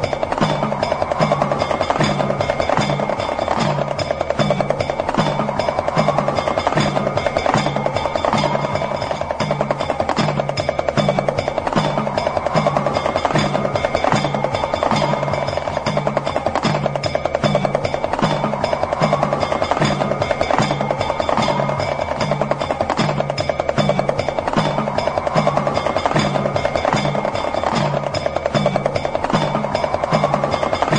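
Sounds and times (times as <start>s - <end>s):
hand drum rattling roll: 0.0s - 30.9s.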